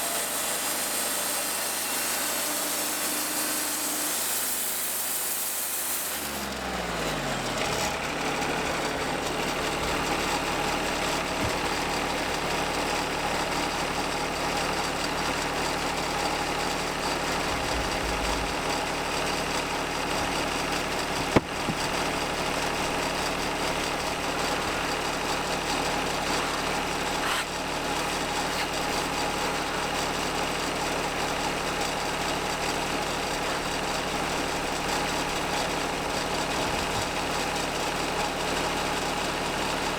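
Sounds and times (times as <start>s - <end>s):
sawmill engine idling: 0.0s - 39.9s
falling whine: 17.1s - 19.3s.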